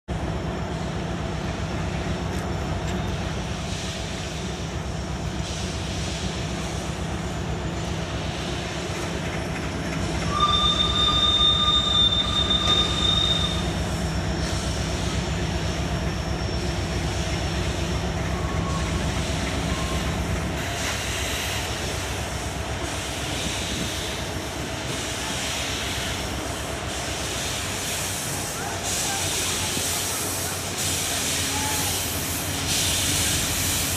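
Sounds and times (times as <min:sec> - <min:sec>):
train rumbling on rails: 0:00.0 - 0:33.9.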